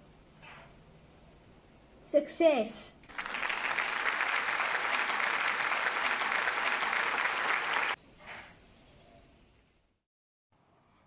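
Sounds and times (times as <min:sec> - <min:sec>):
applause: 0:03.1 - 0:08.0.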